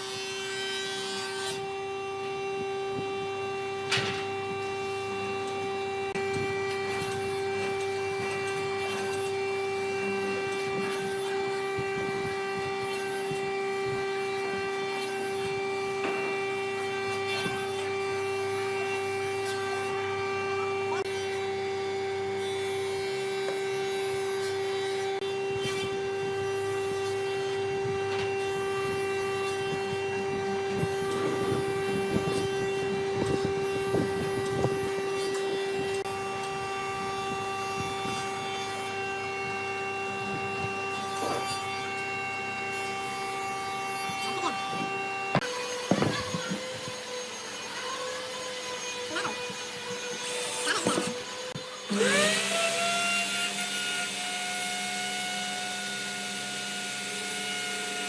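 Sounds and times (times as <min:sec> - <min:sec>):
power tool motor whining: 0:00.0 - 0:58.0
scraping against workpiece: 0:41.1 - 0:41.8.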